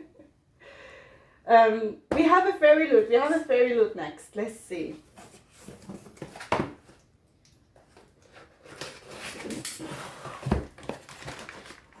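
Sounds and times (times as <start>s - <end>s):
packaging rustling: 7.8s - 12.0s.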